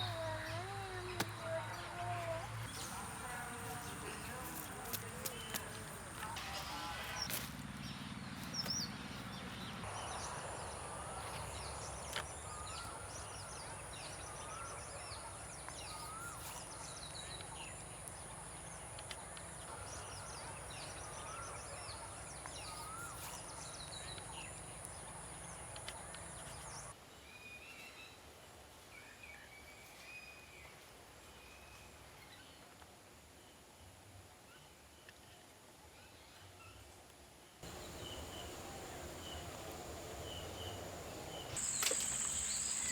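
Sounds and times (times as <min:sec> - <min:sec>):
bird chirps: 0:37.6 - 0:42.9.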